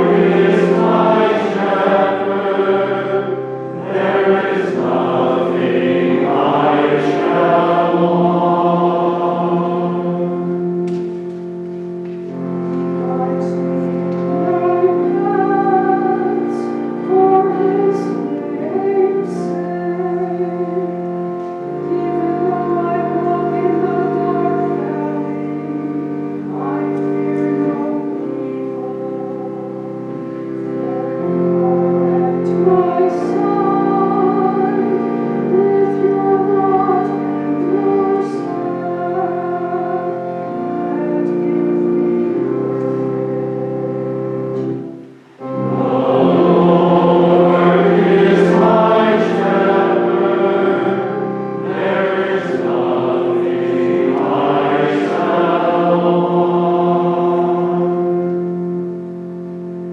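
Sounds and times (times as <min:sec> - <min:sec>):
organ chords: 0:00.0 - 0:59.9.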